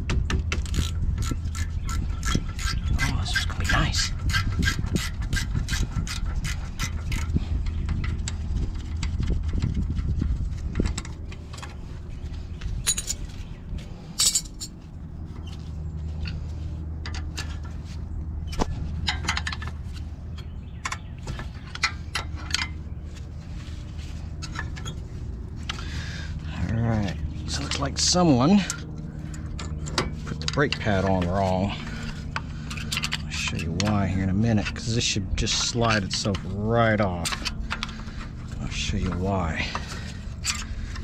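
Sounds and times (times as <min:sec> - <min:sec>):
steady low hum: 0:00.0 - 0:41.0
metallic clinks and knocks: 0:12.8 - 0:13.3, 0:14.2 - 0:14.8.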